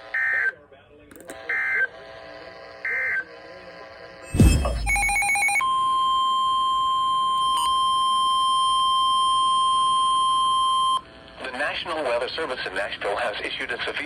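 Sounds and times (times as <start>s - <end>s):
steady radio alert tone: 1.3s - 5.6s
data tone bursts: 4.2s - 5.8s.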